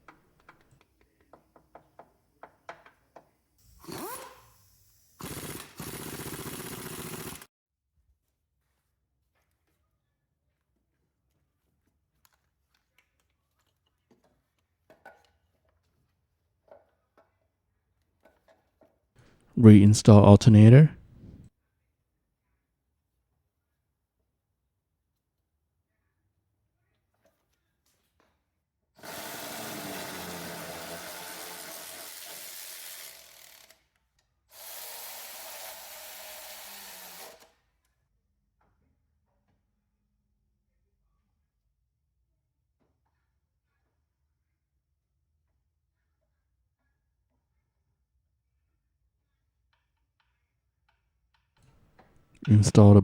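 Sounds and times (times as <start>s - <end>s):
handheld power tool running: 5.2s - 7.4s, 29.0s - 33.7s.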